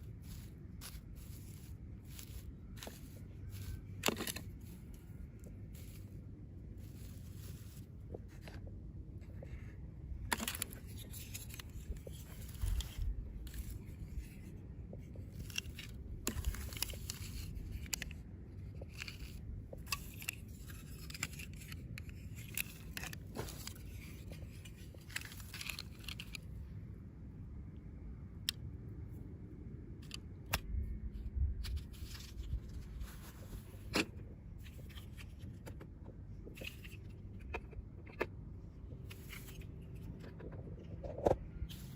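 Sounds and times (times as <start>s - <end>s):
plastic and paper rustling: 0.0s - 6.2s, 9.3s - 26.5s, 31.6s - 35.8s
sharp clicks and scrapes: 0.0s - 6.2s, 6.8s - 26.5s, 30.0s - 30.8s, 31.6s - 41.9s
low steady hum: 0.0s - 41.9s.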